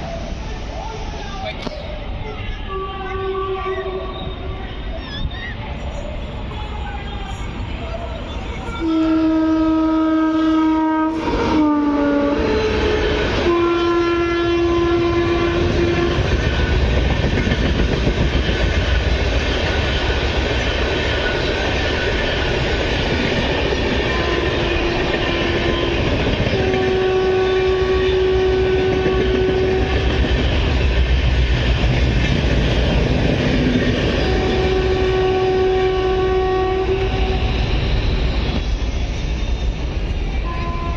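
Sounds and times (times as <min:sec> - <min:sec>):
train rumbling and clattering past: 0:00.0 - 0:40.9
train horn blasts: 0:02.6 - 0:04.5, 0:08.8 - 0:16.4, 0:24.0 - 0:30.2, 0:34.2 - 0:37.6, 0:40.4 - 0:40.9.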